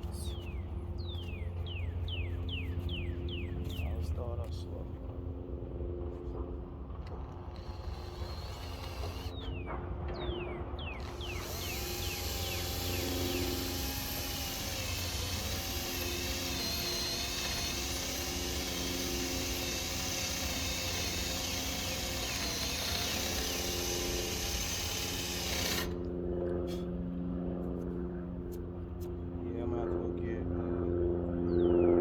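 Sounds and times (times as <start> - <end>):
power drill grinding into steel: 7.2 - 9.4, 11.0 - 26.0.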